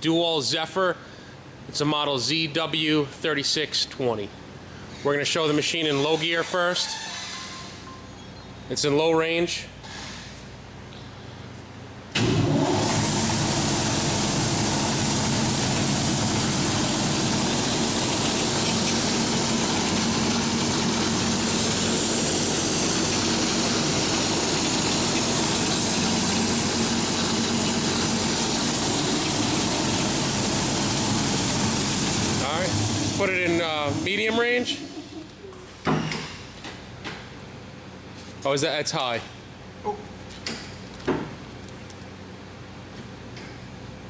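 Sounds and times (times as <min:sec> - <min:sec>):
band saw running: 0:12.2 - 0:34.4.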